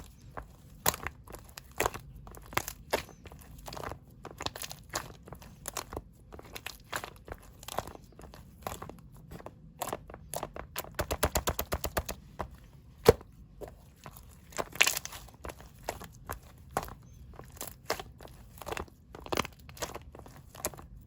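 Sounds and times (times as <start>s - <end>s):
handling taps and clicks: 10.2s - 13.8s.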